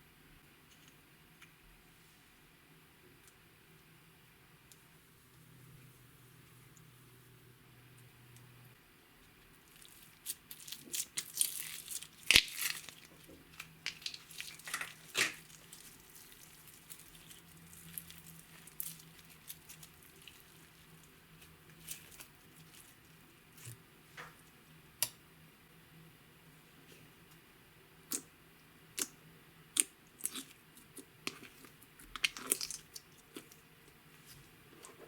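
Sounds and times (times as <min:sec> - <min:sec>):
slime crackling and popping: 0:09.6 - 0:23.7, 0:29.7 - 0:33.6.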